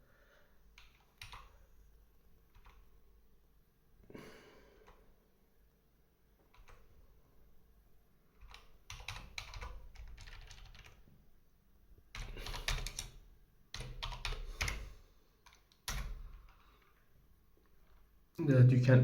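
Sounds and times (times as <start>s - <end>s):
typing on computer keyboard: 0.8s - 1.6s, 2.4s - 2.9s, 6.5s - 7.0s, 8.4s - 11.1s, 12.1s - 16.9s.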